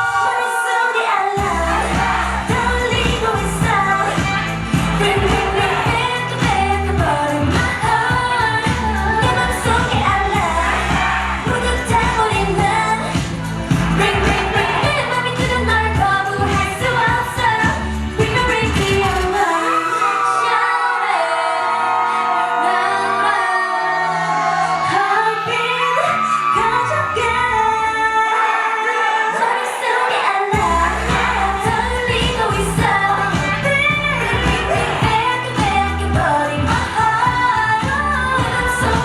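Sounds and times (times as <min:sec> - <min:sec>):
pop backing track: 0:00.0 - 0:20.6, 0:30.5 - 0:39.0
female singing: 0:00.0 - 0:39.0.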